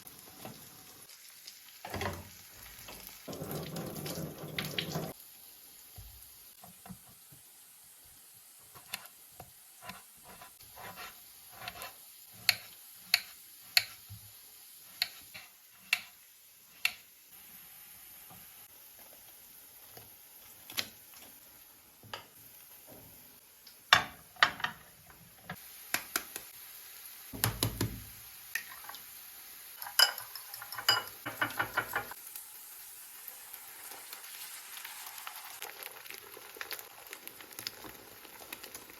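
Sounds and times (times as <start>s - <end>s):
utensils clinking against dishes: 29.8s - 32.1s.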